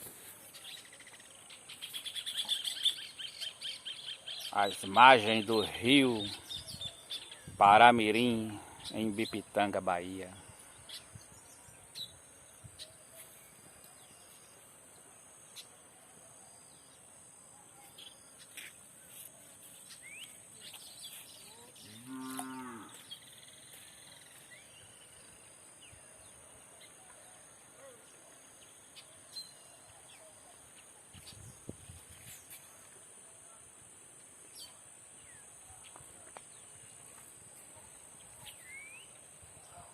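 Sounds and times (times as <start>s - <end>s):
cow mooing: 21.9s - 23.0s.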